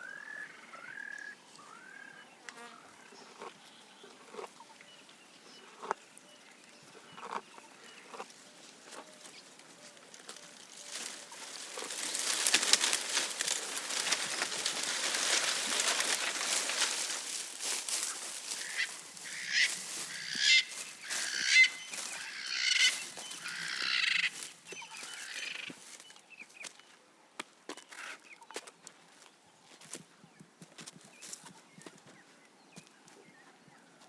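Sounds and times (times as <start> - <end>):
leaves and twigs rustling: 8.1 - 26.8.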